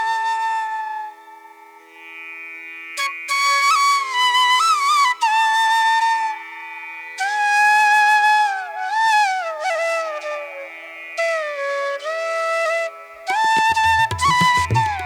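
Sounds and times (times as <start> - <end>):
flute slow melody: 7.3 - 15.0.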